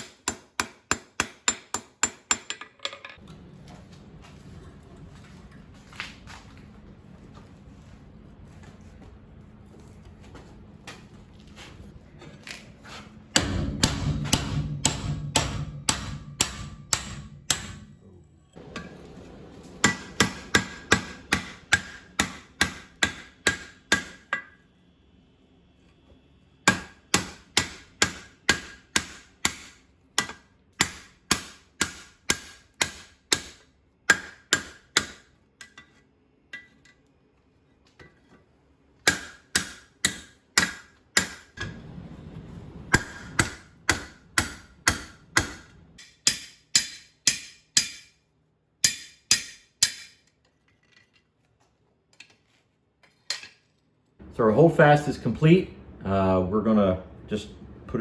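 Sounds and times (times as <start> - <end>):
hammer striking steel on anvil: 0.0 - 2.7, 13.3 - 18.0, 18.6 - 24.6, 26.6 - 37.0, 39.0 - 41.8, 42.9 - 50.4.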